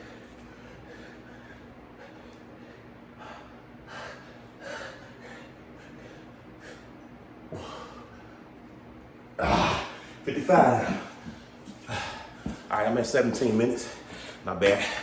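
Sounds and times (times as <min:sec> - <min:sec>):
man breathing hard: 0:00.0 - 0:08.5, 0:09.4 - 0:12.7
faint steady hum: 0:00.0 - 0:15.0.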